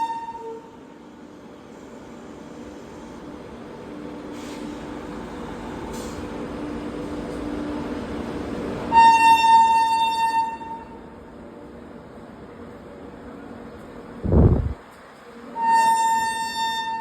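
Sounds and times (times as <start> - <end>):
train horn blast: 0.0 - 0.7, 8.9 - 11.0, 15.5 - 17.0
electric locomotive passing: 0.0 - 17.0.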